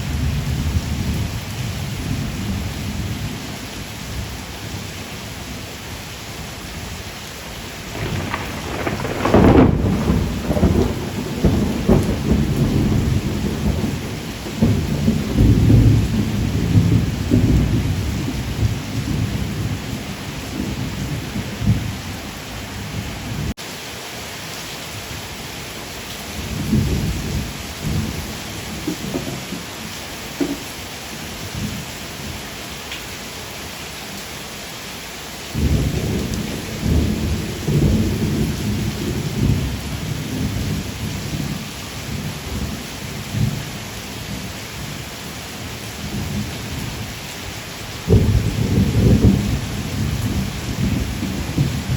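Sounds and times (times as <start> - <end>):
steady rain: 0.0 - 51.9
thunder rumbling: 7.8 - 23.5, 26.4 - 31.8, 35.6 - 43.6, 48.0 - 51.9.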